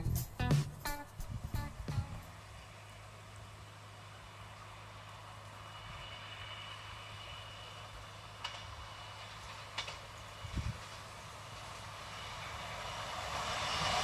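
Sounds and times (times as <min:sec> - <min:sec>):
distant train rumbling: 0:00.0 - 0:14.0.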